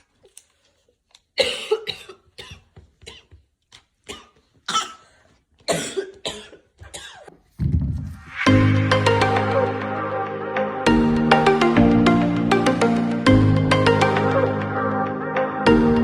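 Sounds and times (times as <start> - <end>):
person coughing: 1.4 - 3.4, 4.0 - 7.4.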